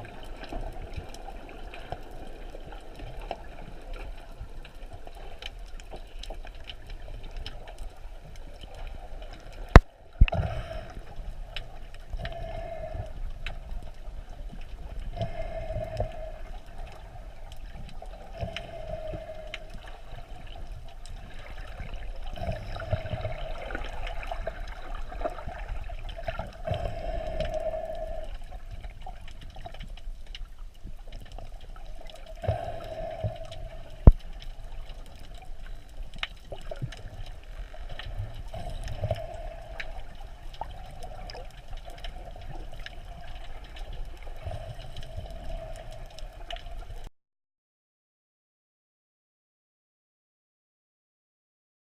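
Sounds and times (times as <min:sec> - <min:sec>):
muffled underwater gurgling: 0:06.9 - 0:29.4, 0:31.8 - 0:47.0.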